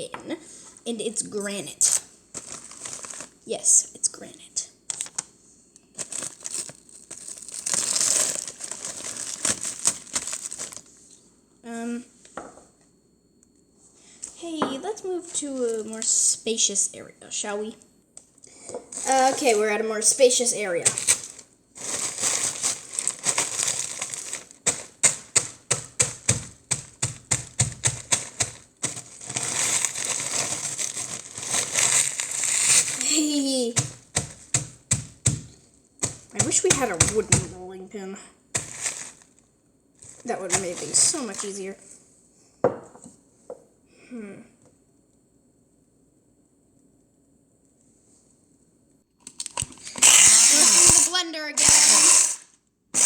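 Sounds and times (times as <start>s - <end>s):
plastic bag crinkling: 1.6s - 3.4s, 4.9s - 11.0s, 15.1s - 16.3s, 18.9s - 37.6s, 38.5s - 39.4s, 40.0s - 41.9s
rolling pin crushing crackers: 1.8s - 3.4s, 5.8s - 10.9s, 18.9s - 37.6s, 38.6s - 39.3s, 40.0s - 41.6s, 49.3s - 52.4s
rolling pin pounding strikes: 24.7s - 28.6s, 33.8s - 37.6s.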